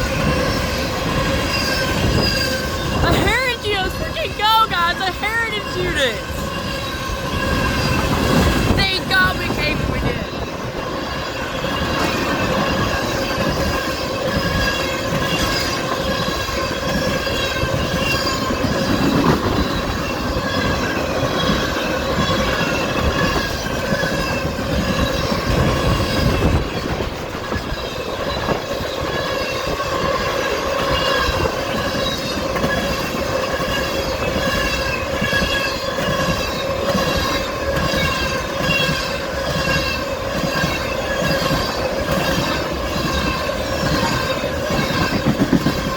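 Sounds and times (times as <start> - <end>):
high wheel squeal on rails: 0.0 - 45.9
train wheels clicking over rail joints: 10.3 - 45.9.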